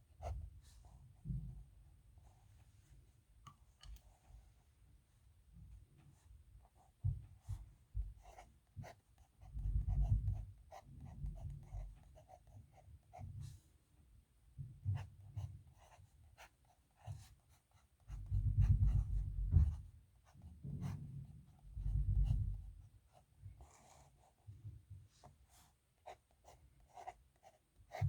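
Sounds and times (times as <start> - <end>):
small clicks and taps: 3.4 - 4.1
pen scratching on paper: 8.2 - 13.1, 15.3 - 21.0, 22.2 - 24.4, 25.5 - 28.0.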